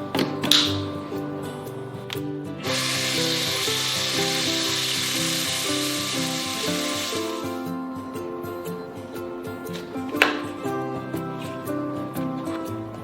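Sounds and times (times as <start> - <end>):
background music: 0.0 - 13.0
steady hiss: 2.6 - 10.6.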